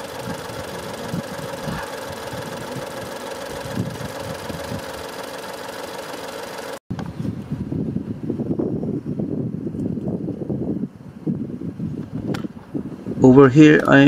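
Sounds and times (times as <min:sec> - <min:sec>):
car engine idling roughly: 0:00.0 - 0:06.8
engine shaking rattle: 0:00.0 - 0:06.8.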